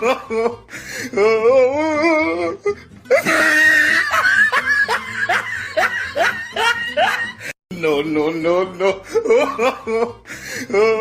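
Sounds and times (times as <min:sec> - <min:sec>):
laughter: 0:03.1 - 0:07.5, 0:09.2 - 0:10.2.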